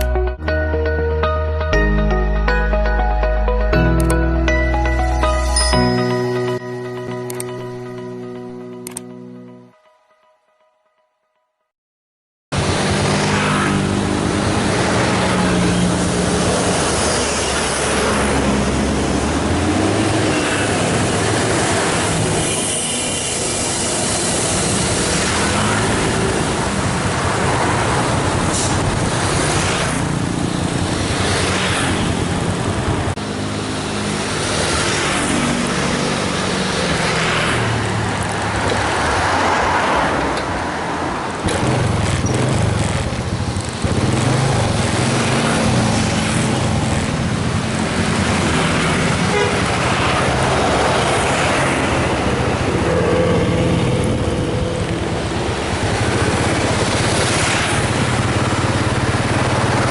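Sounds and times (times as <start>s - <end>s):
bus diesel engines running: 12.6s - 59.9s
road hiss: 20.4s - 27.0s, 28.3s - 31.9s
horns tooting: 49.1s - 50.8s.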